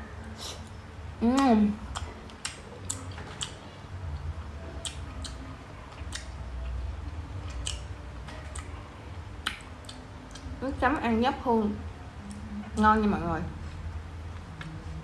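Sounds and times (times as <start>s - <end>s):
person chewing: 1.8s - 3.8s, 4.8s - 8.8s, 9.4s - 10.6s.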